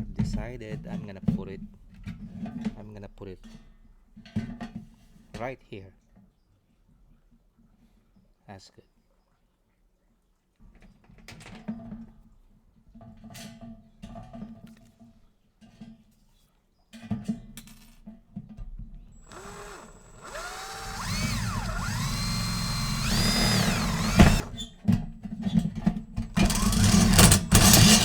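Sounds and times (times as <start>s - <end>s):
power drill boring: 19.2s - 24.7s, 26.4s - 28.0s.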